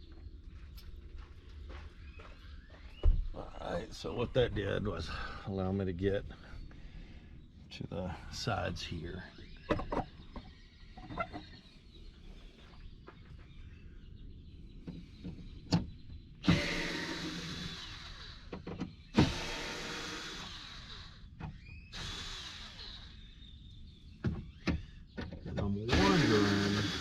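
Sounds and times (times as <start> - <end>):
power drill running: 16.4 - 23.4, 25.9 - 27.0.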